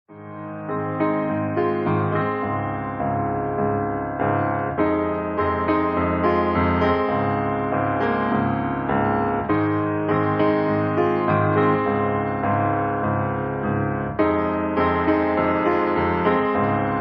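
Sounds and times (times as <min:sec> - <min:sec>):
slow piano music: 0:00.1 - 0:17.0.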